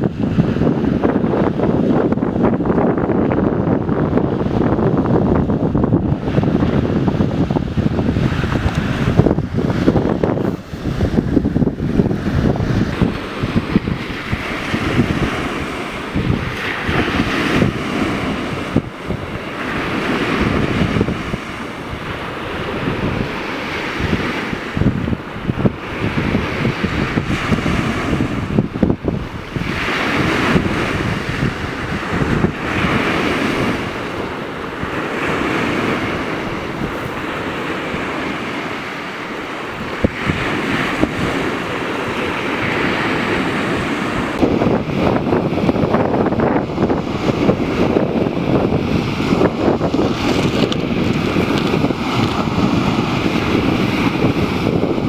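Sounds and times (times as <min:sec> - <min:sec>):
wind buffeting microphone: 0:00.0 - 0:55.0.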